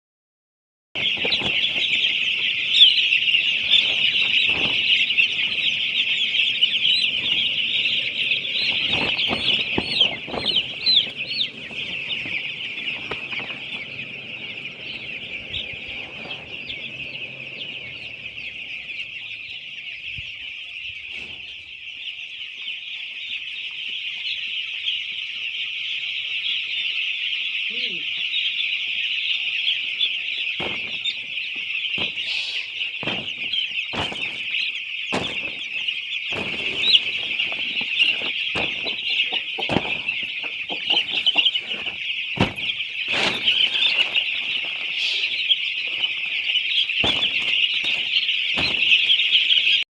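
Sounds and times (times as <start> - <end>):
chicks peeping: 1.0 - 49.9
dull knocks: 33.0 - 43.7, 47.0 - 49.3.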